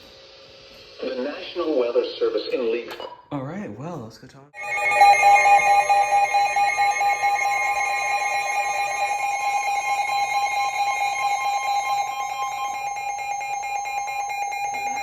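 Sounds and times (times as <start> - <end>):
steady electronic alarm tone: 4.6 - 15.0.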